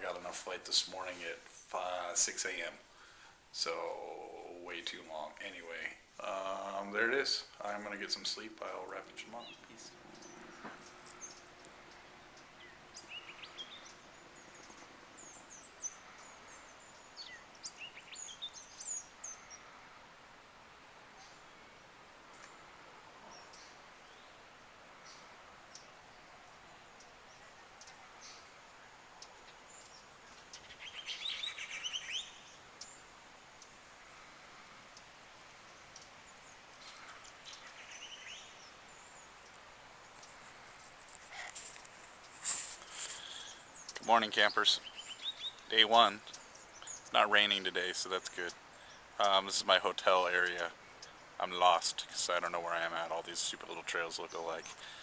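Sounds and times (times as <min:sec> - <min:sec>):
faint background hiss: 0:00.0 - 0:55.0
birds chirping and whistling: 0:09.4 - 0:19.6, 0:29.5 - 0:33.0, 0:42.4 - 0:47.6.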